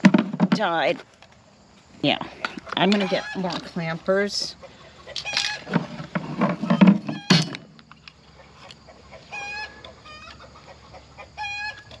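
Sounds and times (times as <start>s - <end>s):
knocking and handling noise: 0.0s - 1.0s, 5.2s - 8.0s
chickens squawking: 2.4s - 3.6s, 4.4s - 5.8s, 8.3s - 12.0s.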